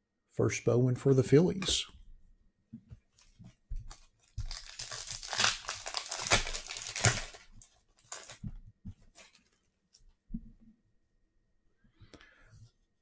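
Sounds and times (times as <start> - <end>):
foil wrapper tearing and crumpling: 3.2 - 8.5, 9.1 - 9.6.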